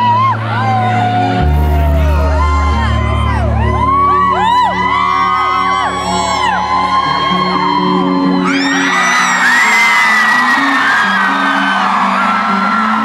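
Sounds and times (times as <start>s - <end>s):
audience whooping and screaming: 0.0s - 13.0s
live rock band playing: 0.5s - 8.8s.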